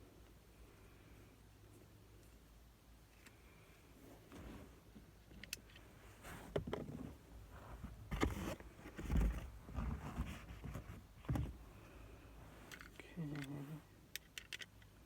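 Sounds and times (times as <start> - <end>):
dull handling thumps: 6.3 - 11.6.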